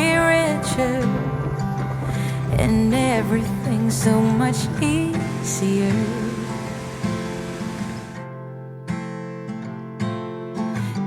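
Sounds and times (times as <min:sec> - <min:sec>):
acoustic guitar strumming: 0:00.0 - 0:11.0
person singing: 0:02.2 - 0:06.9.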